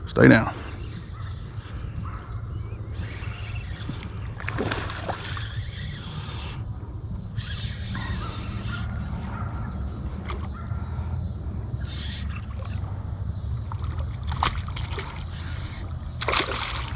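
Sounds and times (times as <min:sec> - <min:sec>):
wind rumbling on microphone: 0:00.0 - 0:16.9
faint bird call: 0:00.6 - 0:16.9
water sloshing and splashing: 0:00.6 - 0:16.9.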